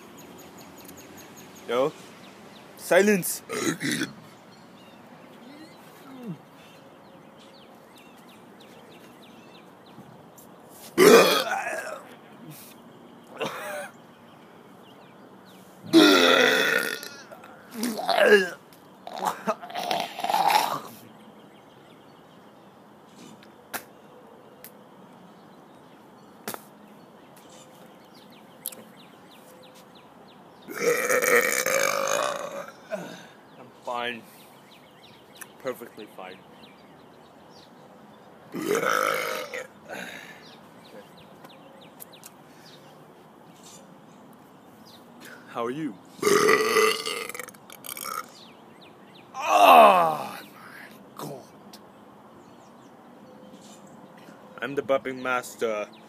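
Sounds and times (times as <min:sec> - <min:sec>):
man burping loudly: 0:03.5 - 0:04.2, 0:11.0 - 0:12.1, 0:15.9 - 0:20.9, 0:30.7 - 0:33.3, 0:38.5 - 0:40.4, 0:46.2 - 0:48.4, 0:49.4 - 0:50.4.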